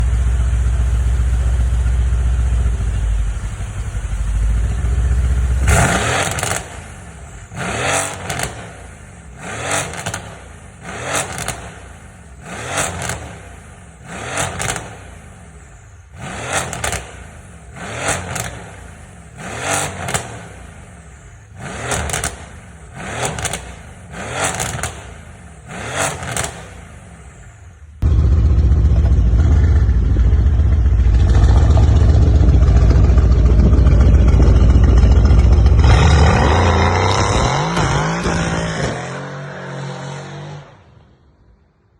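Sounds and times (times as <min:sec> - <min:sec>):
car engine idling: 0:00.0 - 0:37.1
engine revving blips: 0:01.8 - 0:41.6.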